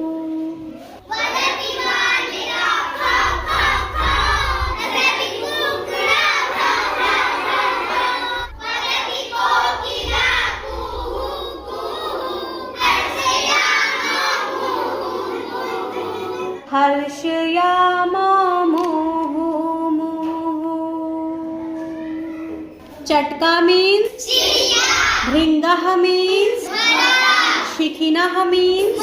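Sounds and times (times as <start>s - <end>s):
children shouting: 1.0s - 16.7s, 21.4s - 23.0s, 24.2s - 25.4s, 26.6s - 27.8s.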